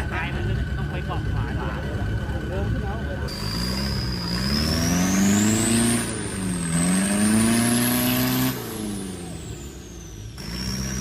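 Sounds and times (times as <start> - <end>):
truck engine revving: 0.0 - 11.0
high whine: 3.2 - 11.0.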